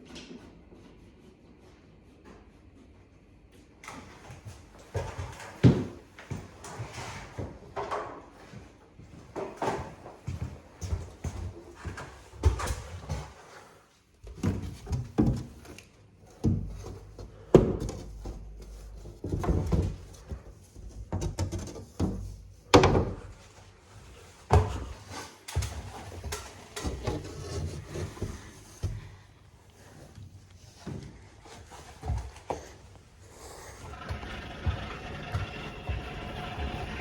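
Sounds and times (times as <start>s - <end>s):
hollow wooden knocks and thuds: 16.4s - 23.3s.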